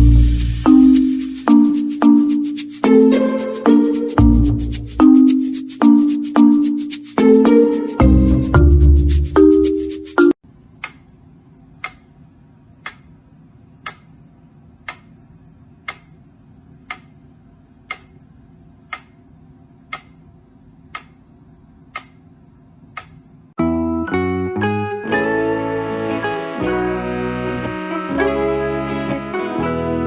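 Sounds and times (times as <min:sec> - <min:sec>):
piano-like notes: 0:00.0 - 0:10.4, 0:23.6 - 0:30.0
sharp ticks: 0:00.0 - 0:11.0.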